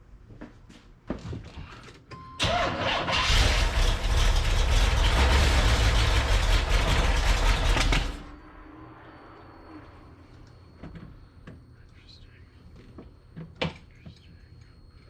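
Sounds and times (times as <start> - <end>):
car engine cranking on starter: 2.4 - 8.3.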